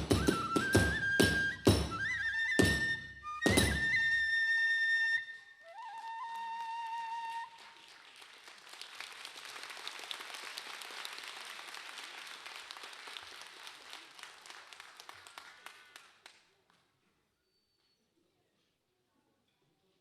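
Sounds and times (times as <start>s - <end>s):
flute high note: 0.0s - 7.7s
audience applauding: 5.8s - 16.4s.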